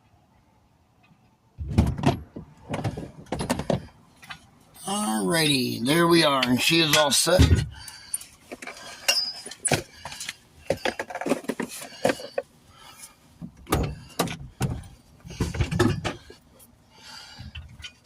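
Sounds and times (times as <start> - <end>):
clanks of tools being handled: 6.2 - 12.4.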